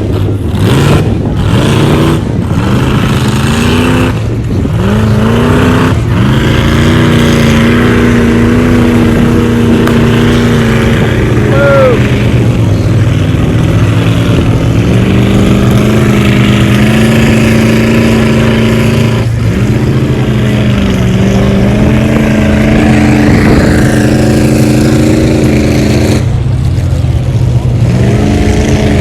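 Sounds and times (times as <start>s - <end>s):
truck engine revving: 0.0s - 29.0s.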